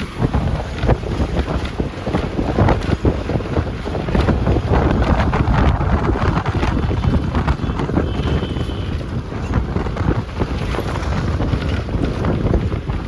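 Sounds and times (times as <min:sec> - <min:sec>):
bus body rattles: 0:00.0 - 0:13.0
bus engine and road noise: 0:00.0 - 0:13.0
wind buffeting microphone: 0:00.0 - 0:13.0.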